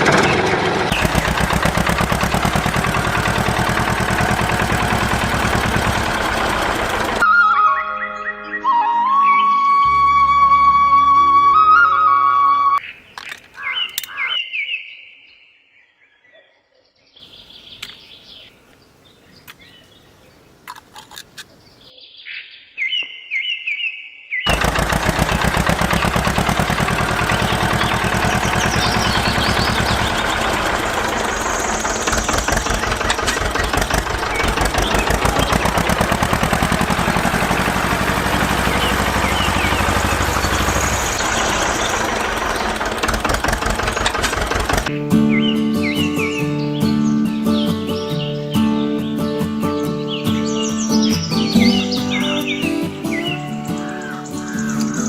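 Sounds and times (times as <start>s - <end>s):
machine noise with fast rattle: 0.0s - 7.2s, 24.5s - 44.9s
high bird-like chirps: 12.8s - 15.1s, 44.9s - 55.0s
clicks: 13.2s - 14.3s, 17.8s - 18.0s, 20.6s - 21.6s.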